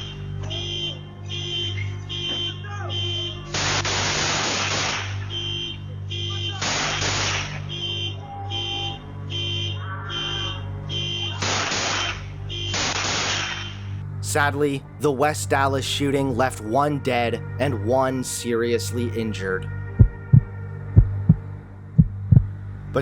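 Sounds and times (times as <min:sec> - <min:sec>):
electronic alarm beeping: 0:00.0 - 0:03.5, 0:05.1 - 0:14.0
steady low hum: 0:19.6 - 0:23.0.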